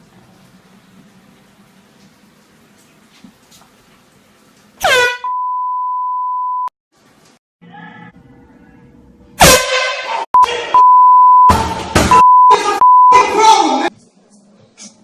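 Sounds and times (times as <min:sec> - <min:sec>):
censor bleep: 0:05.2 - 0:06.7, 0:10.4 - 0:13.2.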